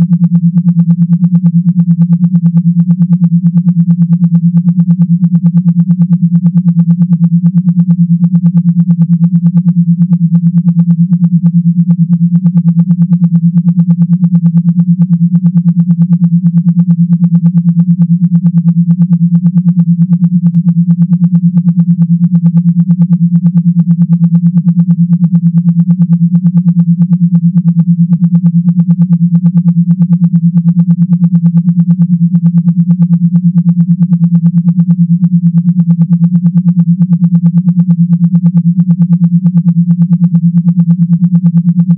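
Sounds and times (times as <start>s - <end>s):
pulsing low buzzing tone: 0.0s - 41.9s.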